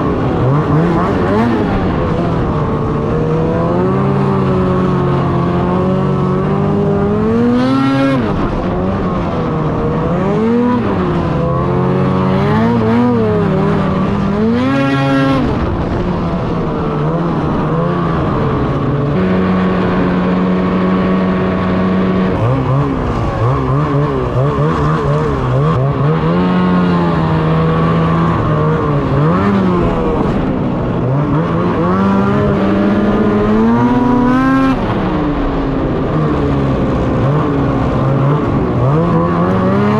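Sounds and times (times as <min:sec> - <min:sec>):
snowmobile engine revving: 0:00.0 - 0:39.9.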